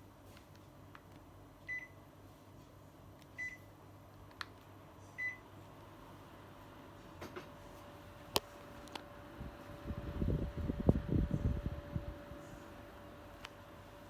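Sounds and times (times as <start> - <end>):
faint steady hum: 0.0 - 14.0
air conditioner short beeps: 1.6 - 2.1, 3.4 - 3.8, 5.2 - 5.5.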